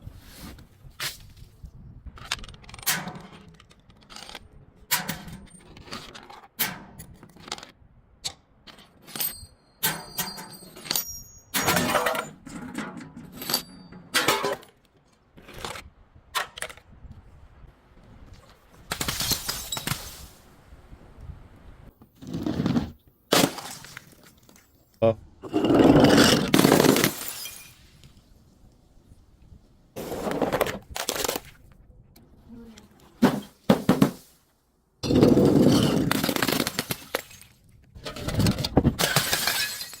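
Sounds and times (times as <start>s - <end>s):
objects crunching and crackling: 30.0s - 31.8s, 35.0s - 40.0s.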